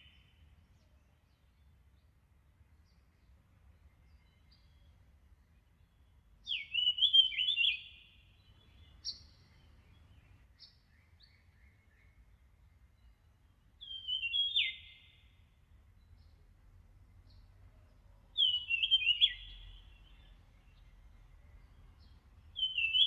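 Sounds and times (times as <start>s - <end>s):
songbird warbling: 6.5s - 10.2s, 13.8s - 15.3s, 18.4s - 20.4s, 22.6s - 23.0s
short bird chirps: 6.5s - 12.2s, 18.4s - 20.8s, 22.0s - 23.0s.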